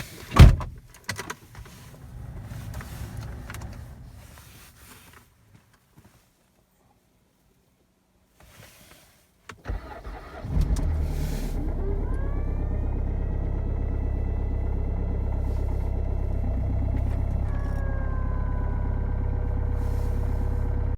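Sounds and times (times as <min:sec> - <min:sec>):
diesel engine idling: 0:09.9 - 0:20.9
rising whine: 0:11.6 - 0:20.9.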